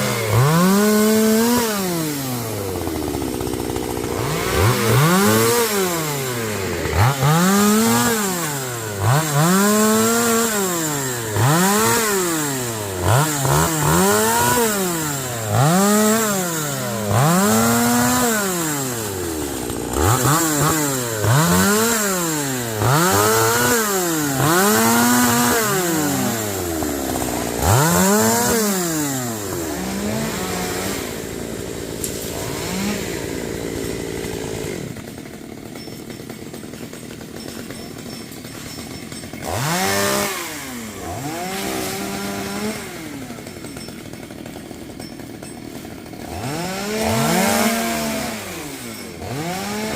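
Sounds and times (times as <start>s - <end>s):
chainsaw engine revving and idling: 0.0s - 49.9s.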